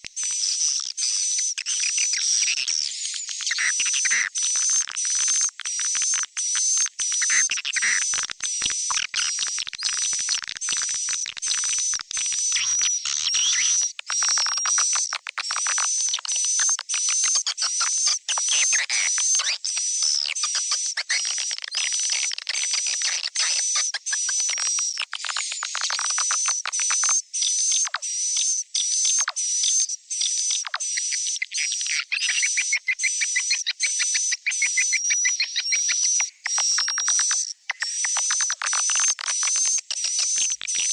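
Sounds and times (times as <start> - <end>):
bird chirps and twittering: 27.4 - 40.9.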